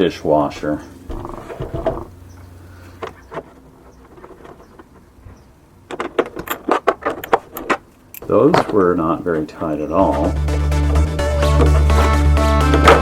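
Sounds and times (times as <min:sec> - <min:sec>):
faint steady hum: 0:00.0 - 0:13.0
light metallic rattles: 0:00.5 - 0:09.8.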